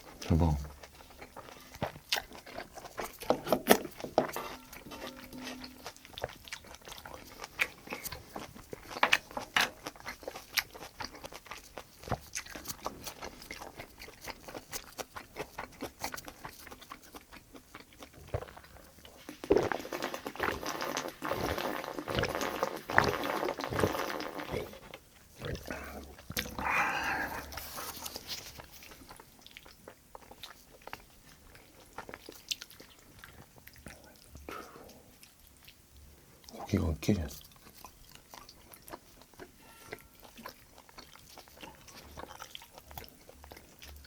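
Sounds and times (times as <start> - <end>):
wet chewing and lip-smacking: 0.0 - 44.0.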